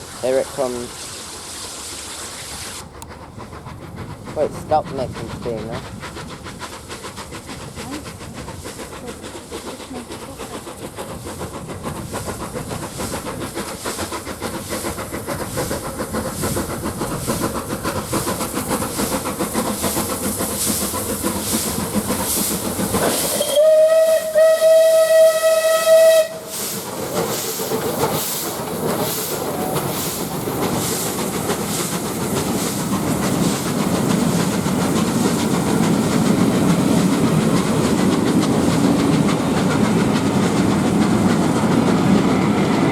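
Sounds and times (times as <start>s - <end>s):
steam locomotive chuffing: 0.0s - 42.9s
steam locomotive whistle: 23.0s - 26.7s.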